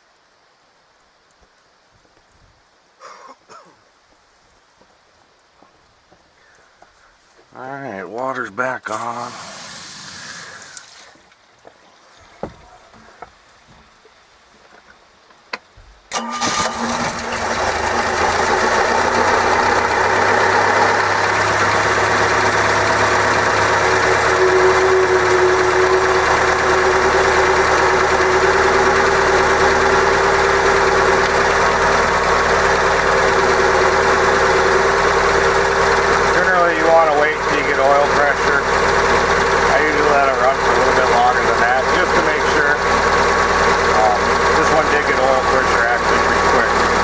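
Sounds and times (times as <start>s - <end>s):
boat engine starting and idling: 8.9s - 11.2s, 16.1s - 47.0s.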